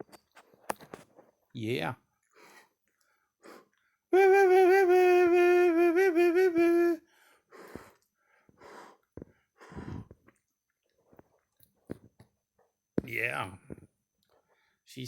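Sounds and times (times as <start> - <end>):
faint breathy sounds: 2.3 - 4.5, 5.5 - 10.4.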